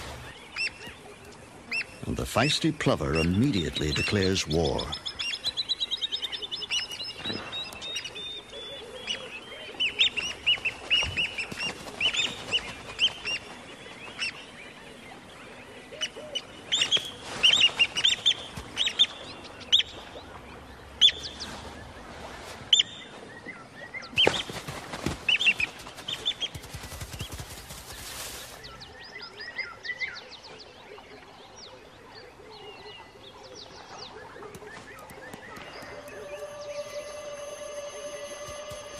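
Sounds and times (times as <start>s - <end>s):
plover alarm calls: 34.5s - 38.9s.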